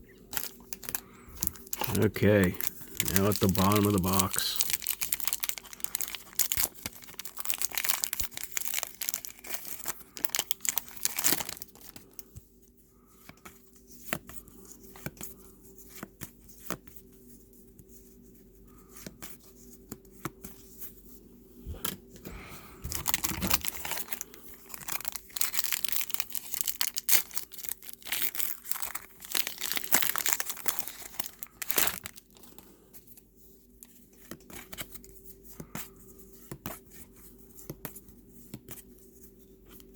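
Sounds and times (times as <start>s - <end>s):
handling of cards: 0.2s - 12.4s, 21.6s - 33.2s
card pack wrappers tearing: 0.3s - 12.2s, 22.9s - 32.5s.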